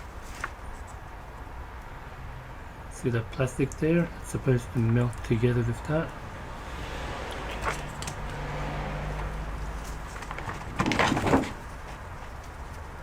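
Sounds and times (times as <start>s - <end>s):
parts rattling on a bench: 9.8s - 12.1s.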